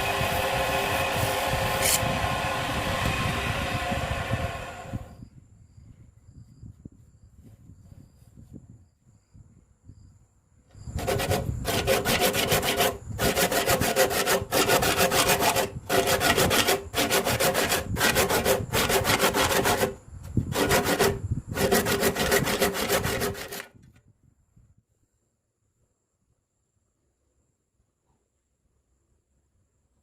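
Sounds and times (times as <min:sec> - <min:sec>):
hand tool scraping wood: 0:00.0 - 0:03.2, 0:10.9 - 0:23.8.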